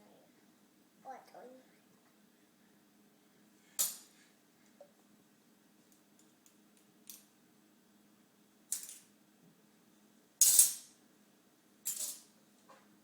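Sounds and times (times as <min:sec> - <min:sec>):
metal spoons clattering: 0:10.4 - 0:10.9, 0:11.9 - 0:12.3.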